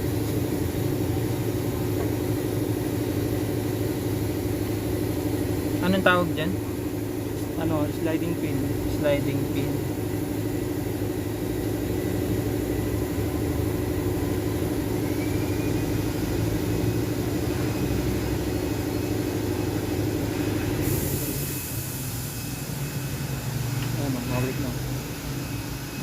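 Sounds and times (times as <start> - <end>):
mechanical hum: 0.0 - 26.0
high hiss: 20.4 - 25.8.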